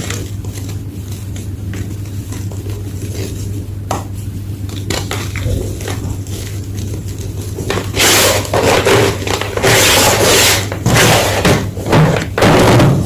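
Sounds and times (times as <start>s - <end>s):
chalk being crushed: 6.3s - 12.6s.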